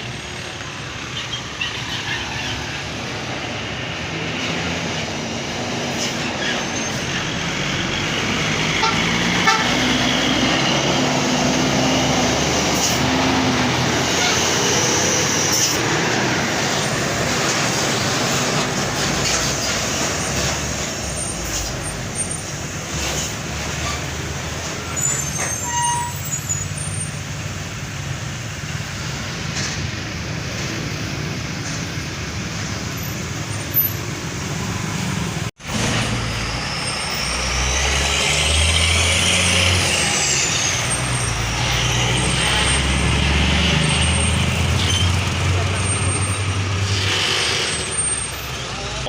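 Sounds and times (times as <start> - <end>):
road traffic passing: 0.0 - 49.0
truck engine with high whine: 0.0 - 49.0.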